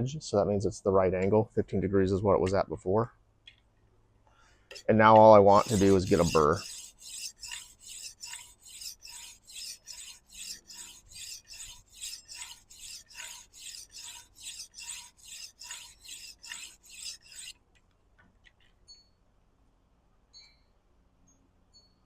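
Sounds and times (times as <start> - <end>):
knife scraping on sharpening stone: 5.5 - 17.5.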